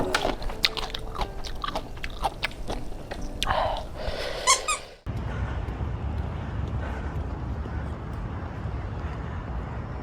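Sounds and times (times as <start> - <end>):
person chewing crunchy food: 0.0 - 4.1.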